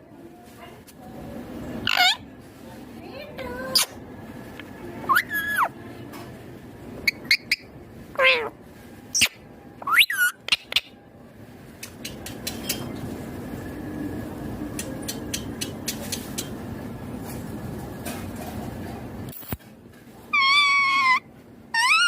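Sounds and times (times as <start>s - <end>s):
parakeet shrill calls: 1.8s - 2.2s, 5.1s - 5.7s, 7.0s - 8.5s, 9.1s - 10.8s, 20.3s - 22.0s.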